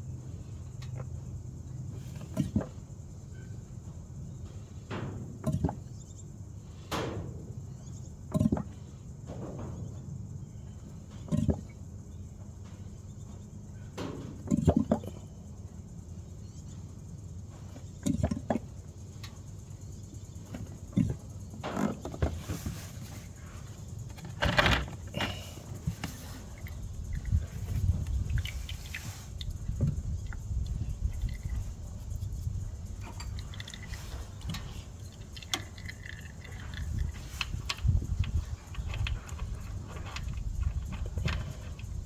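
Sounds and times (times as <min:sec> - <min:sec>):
low steady hum: 0:00.0 - 0:42.0.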